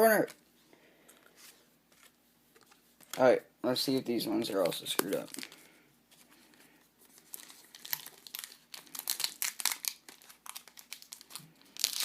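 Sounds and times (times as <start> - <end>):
card pack wrapper crinkling: 3.9 - 12.0.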